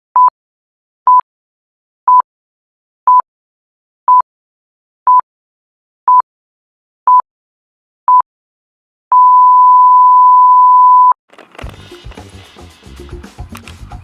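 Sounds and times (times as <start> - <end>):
long beep: 9.1 - 11.2
music: 11.6 - 14.0.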